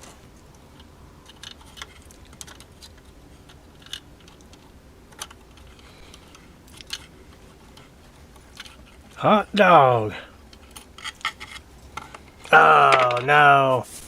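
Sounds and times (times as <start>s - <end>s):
small clock parts clicking: 0.7s - 7.8s.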